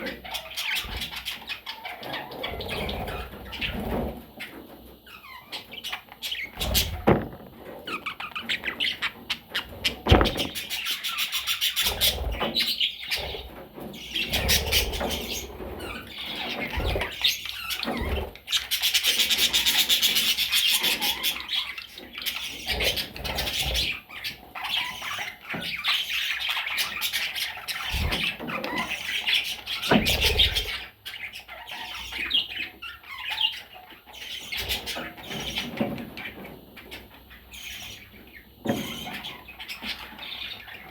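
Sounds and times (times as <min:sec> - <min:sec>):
budgerigars chattering: 0:00.0 - 0:40.9.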